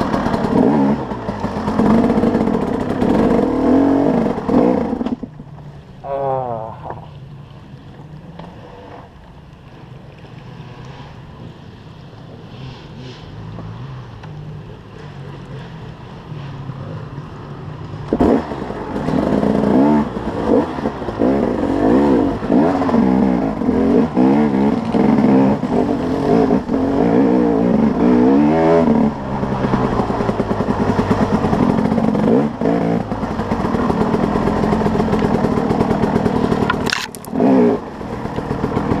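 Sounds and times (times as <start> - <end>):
motorcycle engine revving: 0.0 - 7.2, 8.0 - 39.0.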